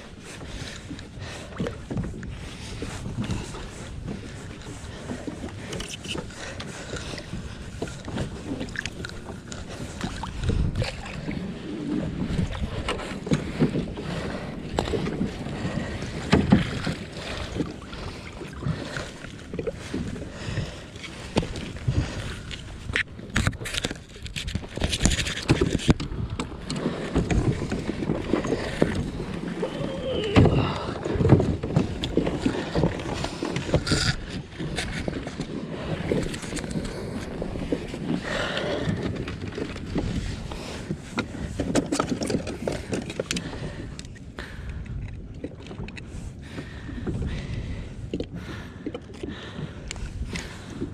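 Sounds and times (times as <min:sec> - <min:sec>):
water splashing against kayak hull: 0:00.0 - 0:50.9
knocks and bumps on kayak: 0:10.0 - 0:17.8, 0:24.8 - 0:33.8.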